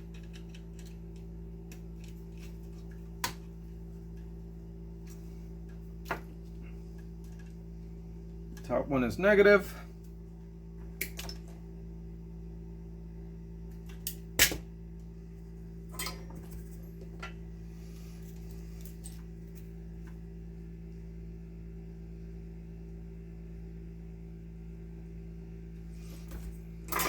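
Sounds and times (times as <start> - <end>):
metal tools clicking and tapping: 0.0 - 1.2
steady low hum: 0.0 - 27.0.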